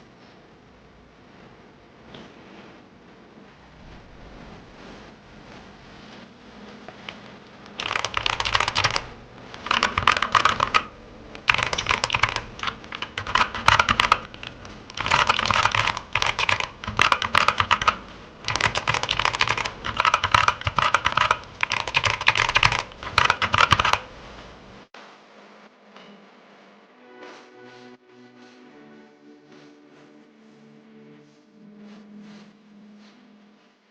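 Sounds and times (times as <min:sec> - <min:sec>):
mechanical keyboard key clacks: 0:07.8 - 0:24.0.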